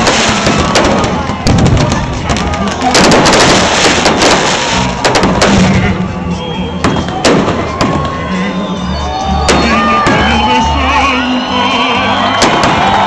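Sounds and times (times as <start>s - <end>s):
fireworks bangs and crackle: 0.0s - 6.2s, 6.8s - 8.3s, 9.4s - 10.6s, 12.3s - 13.0s
crowd voices: 0.0s - 13.0s
music with steady bass: 0.0s - 13.0s.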